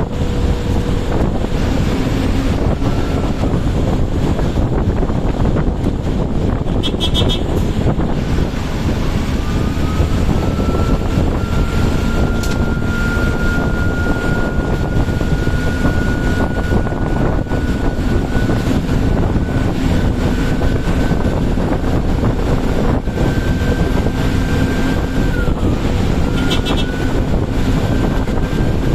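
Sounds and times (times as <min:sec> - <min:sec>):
bus engine and road rumble: 0:00.0 - 0:28.9
turbocharger whistling whine: 0:00.0 - 0:28.9.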